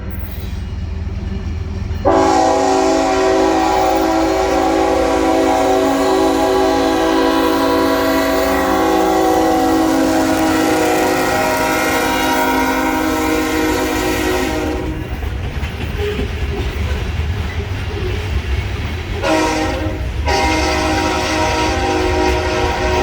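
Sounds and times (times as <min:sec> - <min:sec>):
low rumble of moving train: 0:00.0 - 0:23.0
locomotive air horn chord: 0:02.0 - 0:15.1, 0:19.2 - 0:23.0.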